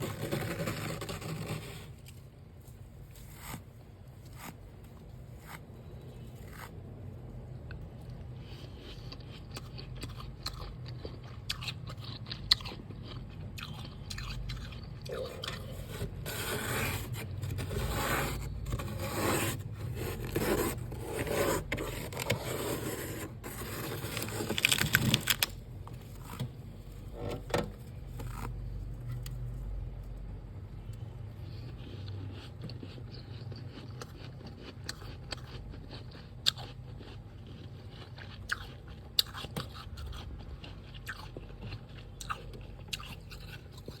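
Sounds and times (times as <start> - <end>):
freezer frost being scraped: 0.0 - 2.1, 3.1 - 4.6, 5.2 - 6.8, 15.1 - 25.5.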